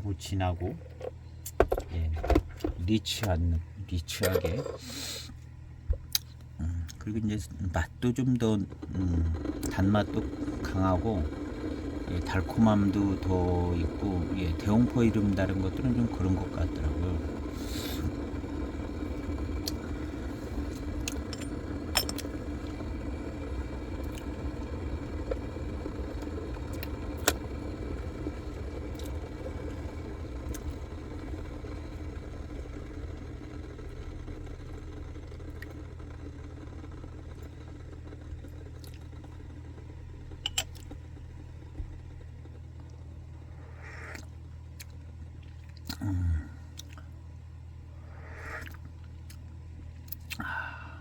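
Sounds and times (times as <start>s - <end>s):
low background hum: 0.0s - 51.0s
sharp clicks and clinks: 40.4s - 40.8s.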